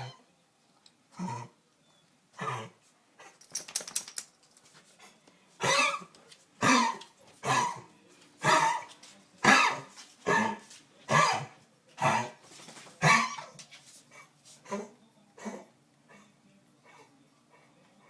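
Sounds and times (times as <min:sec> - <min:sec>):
rattle of clicks: 0:03.4 - 0:04.6
animal coughing harshly: 0:05.6 - 0:07.9, 0:09.4 - 0:09.9.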